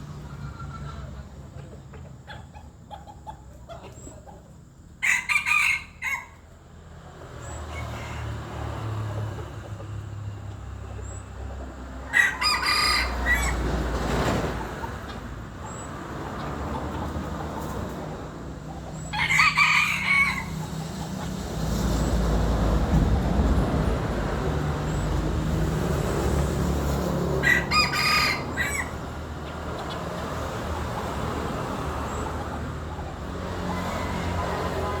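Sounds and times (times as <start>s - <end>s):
rooster crowing: 5.0s - 6.4s, 12.0s - 13.8s, 19.0s - 20.8s, 27.3s - 29.2s, 33.5s - 35.0s.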